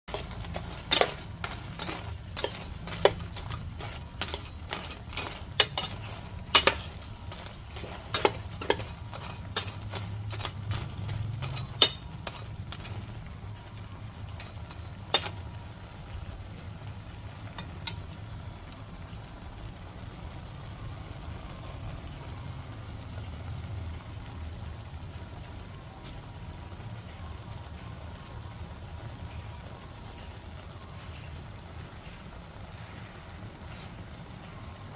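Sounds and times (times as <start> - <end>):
utensils clicking against dishes: 0.1 - 13.1, 14.3 - 15.4.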